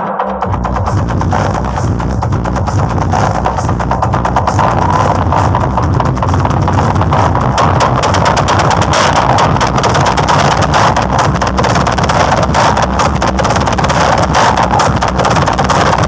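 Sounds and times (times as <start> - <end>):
film soundtrack over loud speakers: 0.0 - 16.0
microphone overload crackling: 0.5 - 16.0.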